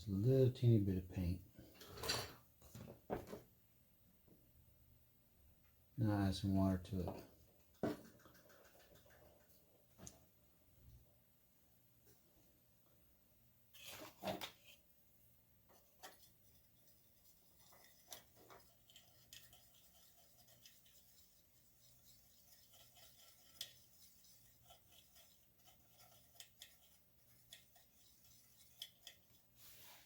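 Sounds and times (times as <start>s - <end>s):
paintbrush scraping and rubbing: 15.7s - 30.0s.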